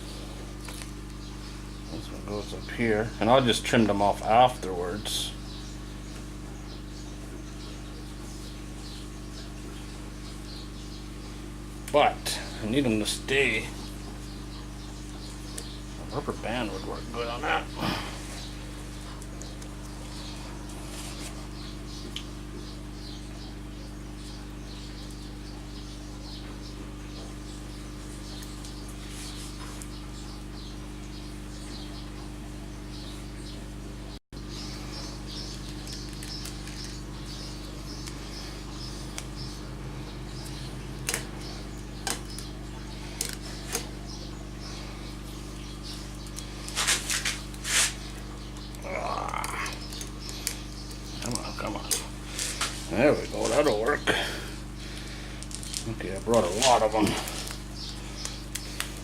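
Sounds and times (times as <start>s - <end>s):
low electrical hum: 0.0s - 59.0s
small objects clicking: 35.5s - 37.0s, 55.4s - 59.0s.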